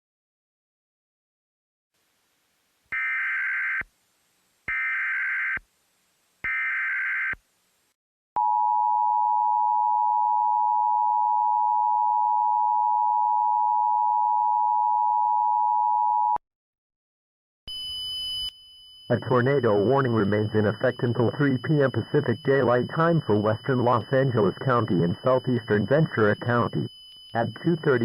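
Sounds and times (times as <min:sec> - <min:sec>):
buzzing data bursts: 0:19.1 - 0:28.0.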